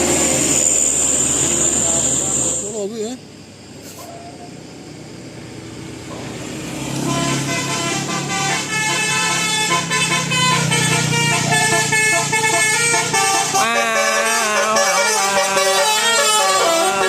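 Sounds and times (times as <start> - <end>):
bus engine: 0.0 - 17.0
multi-tone bus horn tune: 6.8 - 17.0.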